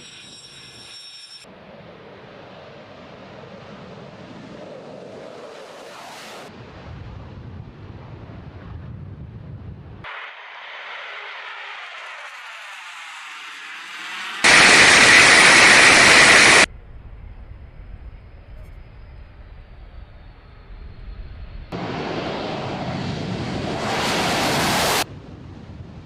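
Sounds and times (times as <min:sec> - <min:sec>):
aircraft engine roar: 0:01.5 - 0:26.0.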